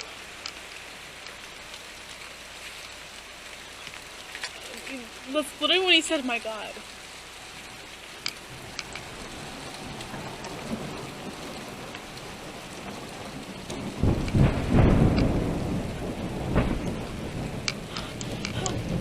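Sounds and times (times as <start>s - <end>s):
rain drop ticks: 0.0s - 19.0s
steady rain: 0.0s - 19.0s
low rumble of thunder: 8.5s - 19.0s.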